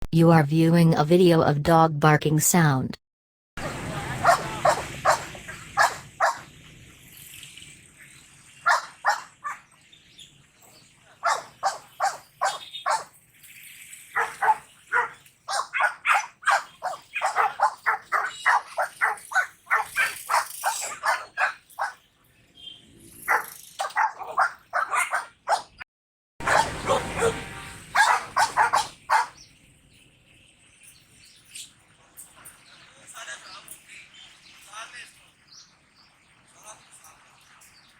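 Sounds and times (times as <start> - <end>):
dog barking: 4.1 - 6.5, 8.7 - 9.6, 11.2 - 13.1, 14.2 - 22.0, 23.3 - 25.8, 26.4 - 29.4.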